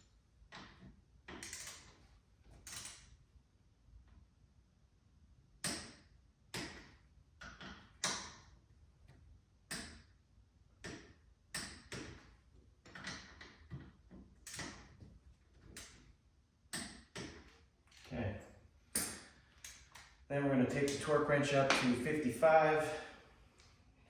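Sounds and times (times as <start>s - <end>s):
torque wrench clicking: 1.4s - 1.8s.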